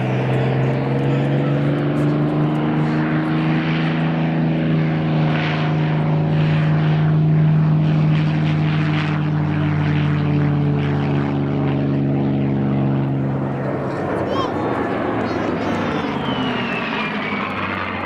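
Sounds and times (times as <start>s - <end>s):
propeller aircraft engine: 0.0s - 18.0s.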